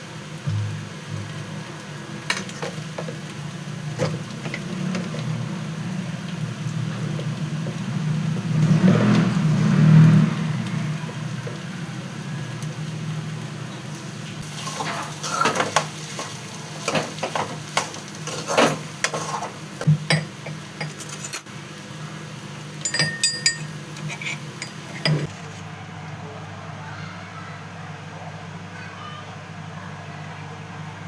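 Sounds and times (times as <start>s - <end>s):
low hum: 0.4s - 1.7s
metal spoon scraping a pan: 18.2s - 19.6s, 20.8s - 21.5s, 23.1s - 25.3s.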